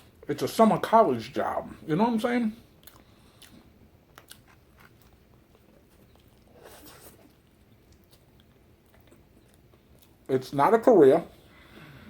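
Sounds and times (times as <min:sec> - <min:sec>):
faint chewing: 0:02.5 - 0:10.4.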